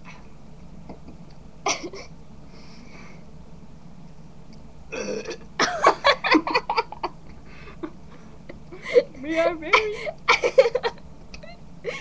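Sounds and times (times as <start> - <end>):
person burping: 4.9 - 5.5.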